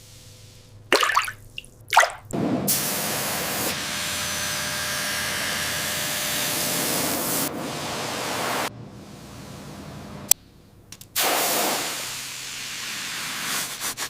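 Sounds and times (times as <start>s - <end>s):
pressurised jet spraying hiss: 11.2s - 13.9s.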